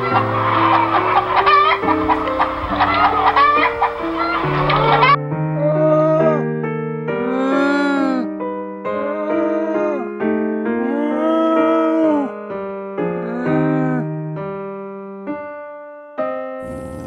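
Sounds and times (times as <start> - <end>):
electric piano tune: 0.0 - 17.0.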